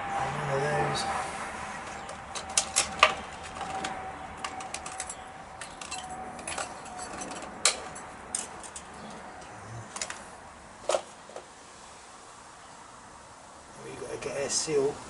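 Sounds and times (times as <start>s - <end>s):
small metal parts clicking: 2.3s - 8.9s.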